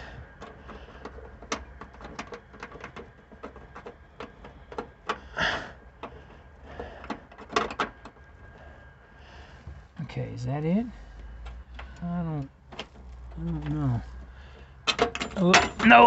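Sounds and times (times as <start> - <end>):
bolt clicking and scraping on metal: 0.4 - 5.2.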